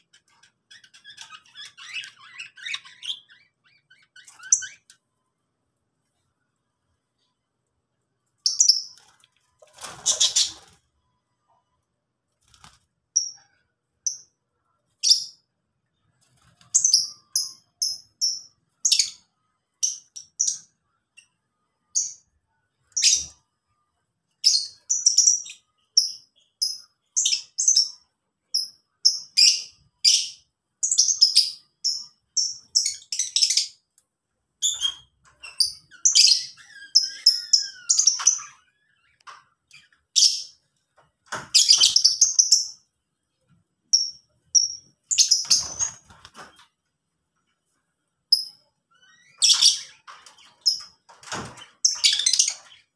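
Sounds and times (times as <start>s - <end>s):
lovebirds chirping: 0.0s - 5.1s, 8.4s - 9.2s, 34.6s - 43.3s, 43.9s - 46.8s.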